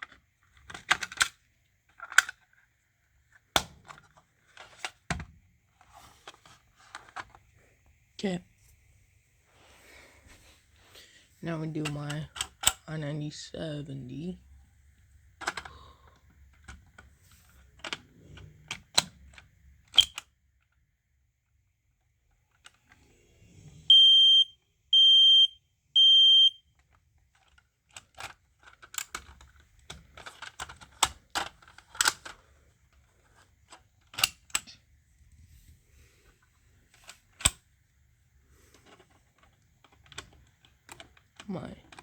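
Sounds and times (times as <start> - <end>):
smoke alarm beeps: 23.9 - 26.6.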